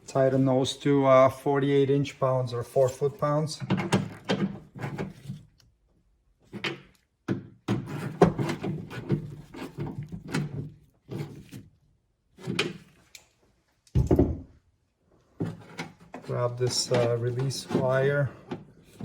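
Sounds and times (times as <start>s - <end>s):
tools knocking and clunking: 3.6s - 5.4s, 13.9s - 14.6s, 15.4s - 19.0s.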